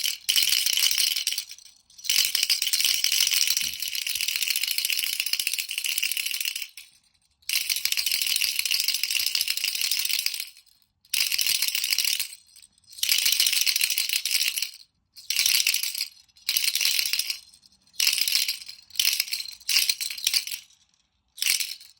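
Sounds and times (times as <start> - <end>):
baby rattle toy shaking: 0.0 - 21.9.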